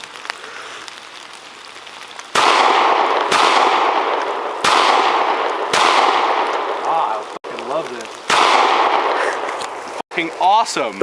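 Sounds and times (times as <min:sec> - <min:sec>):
pistol shots: 0:02.3 - 0:06.8, 0:08.3 - 0:09.5.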